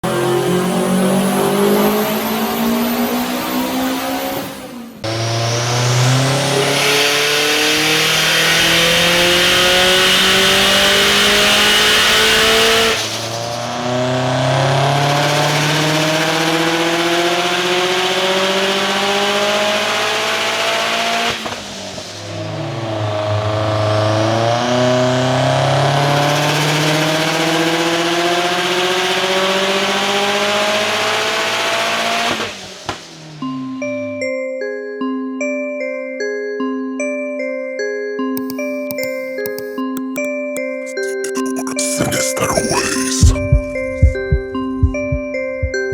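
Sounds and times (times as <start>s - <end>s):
car engine revving at full throttle: 0.0s - 33.3s.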